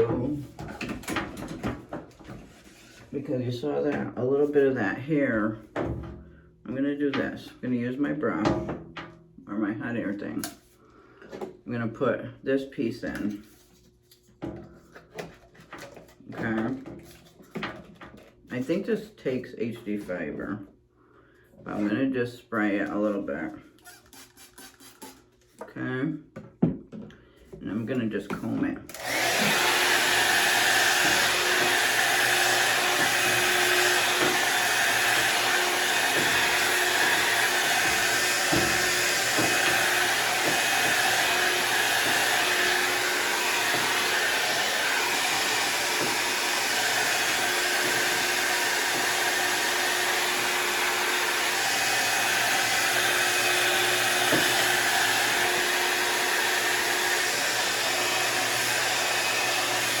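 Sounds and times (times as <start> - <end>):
hot-air styling brush blowing: 28.9 - 60.0.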